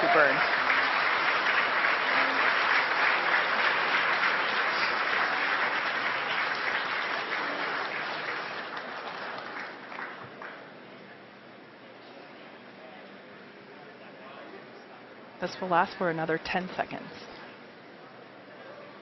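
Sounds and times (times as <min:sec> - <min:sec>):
crowd applauding: 0:00.0 - 0:10.7.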